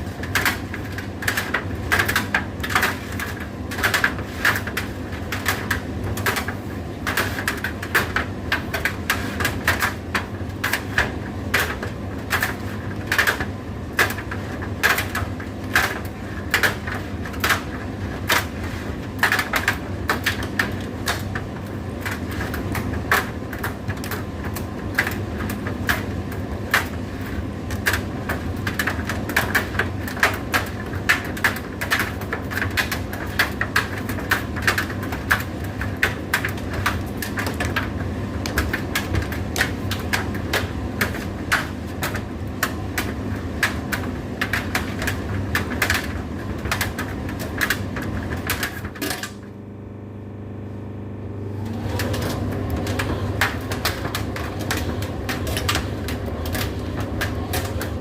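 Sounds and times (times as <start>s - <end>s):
clicks and taps in dryer: 0.0s - 49.4s, 51.9s - 58.0s
tumble dryer motor hum: 0.0s - 58.0s.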